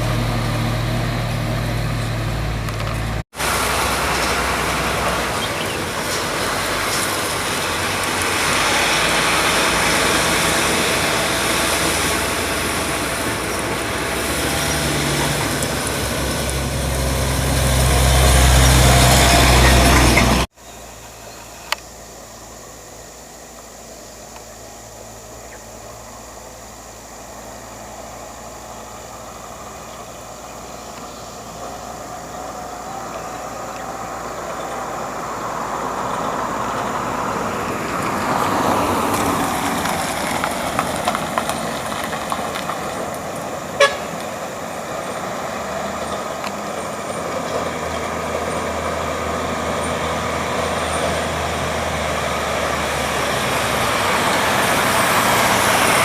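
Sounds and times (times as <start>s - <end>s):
truck engine and tyres: 0.0s - 56.0s
truck horn toot: 43.8s - 44.2s.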